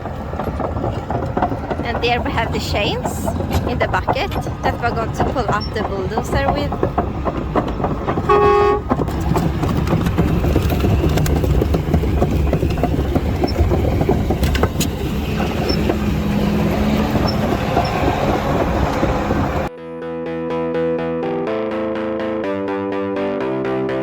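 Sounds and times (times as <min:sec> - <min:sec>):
heavy machine engine rumbling: 0:00.0 - 0:19.7
sharp knocks: 0:00.4 - 0:19.7
horn toot: 0:08.2 - 0:08.9.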